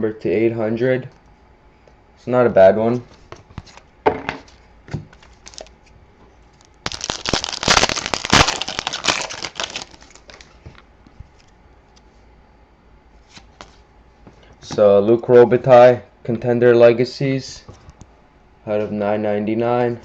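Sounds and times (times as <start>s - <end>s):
plastic wrapper tearing and crinkling: 5.2s - 5.8s, 6.6s - 10.8s.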